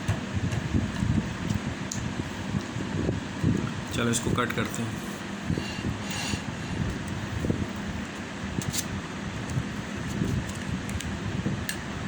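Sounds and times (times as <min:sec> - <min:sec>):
low rumbling background noise: 0:00.0 - 0:12.0.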